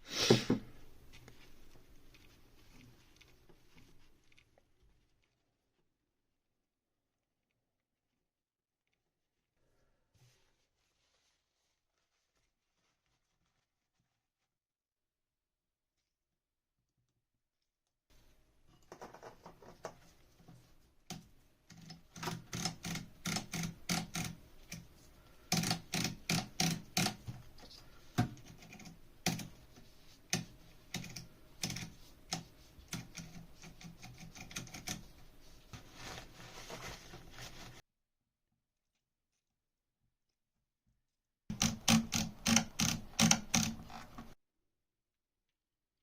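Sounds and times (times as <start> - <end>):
irregular clicking and tapping: 18.7 - 35.3, 41.5 - 44.4.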